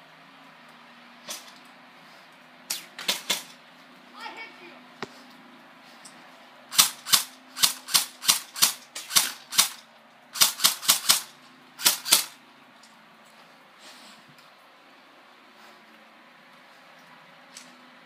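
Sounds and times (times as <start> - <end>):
airsoft gun shots: 2.7 - 3.6, 6.7 - 9.8, 10.4 - 12.4.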